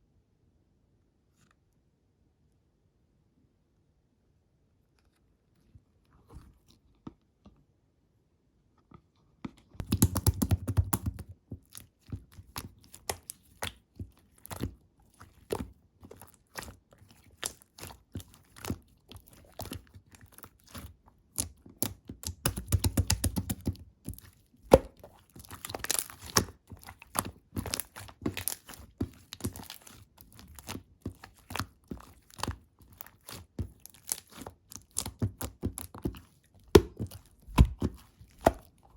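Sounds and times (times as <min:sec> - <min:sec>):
slime squeezed with sticky clicks: 0:16.2 - 0:38.7.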